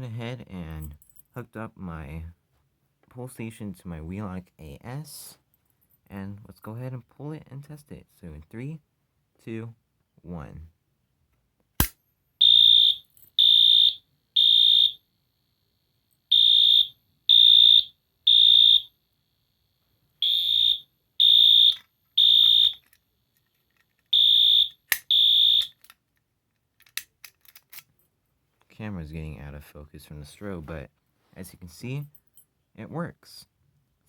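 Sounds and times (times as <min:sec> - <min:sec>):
sharp click: 0:11.8 - 0:12.0.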